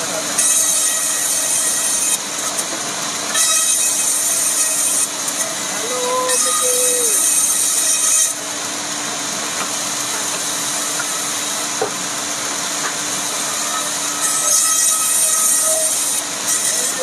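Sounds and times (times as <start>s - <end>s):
power tool humming: 0.0s - 17.0s
blade cutting wood hiss: 6.4s - 8.4s, 12.8s - 17.0s.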